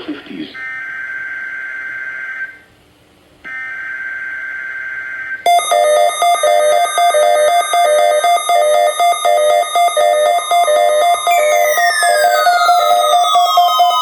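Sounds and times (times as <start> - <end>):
loud alarm tone: 0.6 - 2.7, 3.5 - 14.0
digital data bursts: 5.5 - 14.0
pulsing buzz: 5.5 - 14.0.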